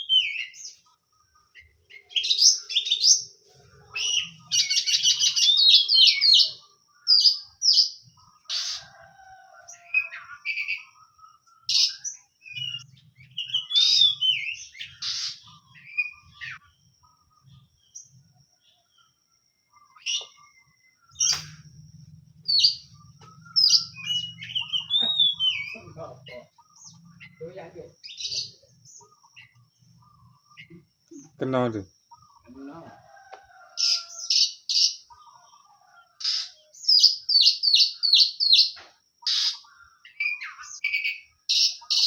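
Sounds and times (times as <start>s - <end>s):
bird chirps and whistles: 23.6s - 25.8s.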